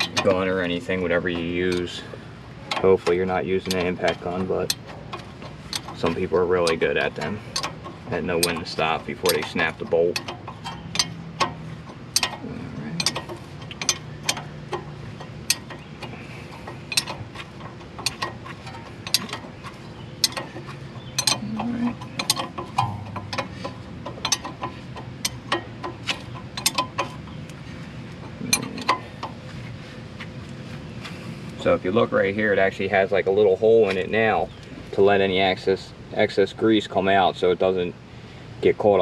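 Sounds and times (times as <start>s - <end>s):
socket ratchet clicking: 10.2s - 12.4s, 13.0s - 27.2s.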